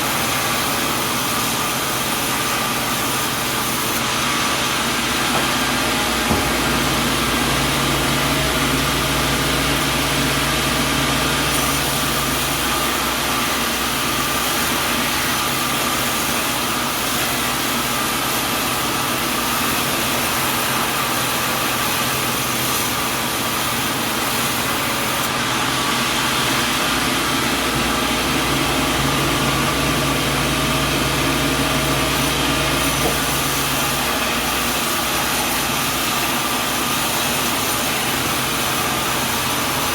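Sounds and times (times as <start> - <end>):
sawmill machinery running: 0.0 - 39.9
low motor hum: 5.0 - 13.9, 25.2 - 33.9.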